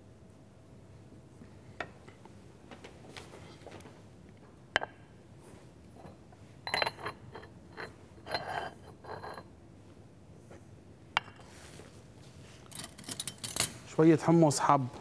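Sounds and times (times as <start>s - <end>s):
dishware clattering and scraping: 6.0s - 9.5s.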